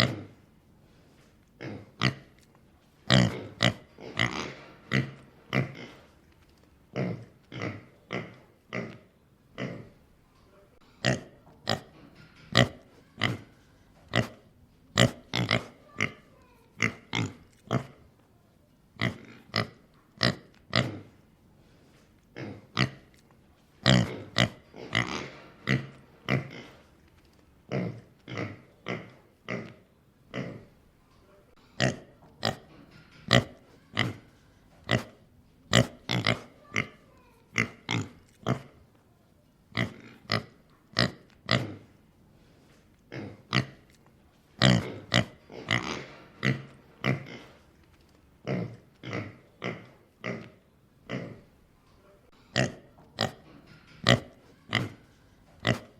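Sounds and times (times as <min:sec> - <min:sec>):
pig grunting: 0:00.0 - 0:00.4, 0:01.6 - 0:02.4, 0:03.1 - 0:06.1, 0:06.9 - 0:10.0, 0:14.1 - 0:18.0, 0:19.0 - 0:21.2, 0:22.3 - 0:23.2, 0:23.8 - 0:26.9, 0:27.7 - 0:30.7, 0:31.8 - 0:38.8, 0:43.1 - 0:43.9, 0:44.6 - 0:47.6, 0:48.4 - 0:51.5, 0:52.5 - 0:55.9.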